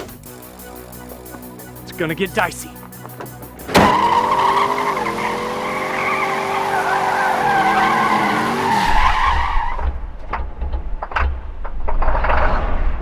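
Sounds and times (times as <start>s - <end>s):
car tyres squealing: 2.8s - 10.4s.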